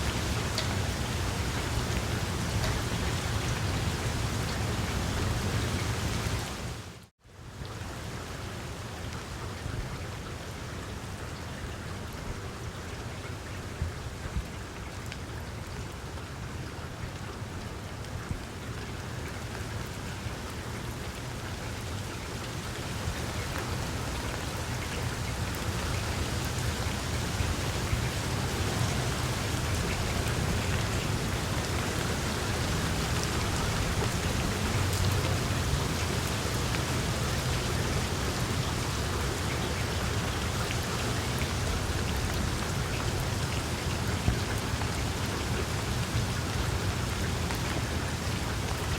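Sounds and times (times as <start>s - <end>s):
rain falling on leaves: 0.0s - 48.9s.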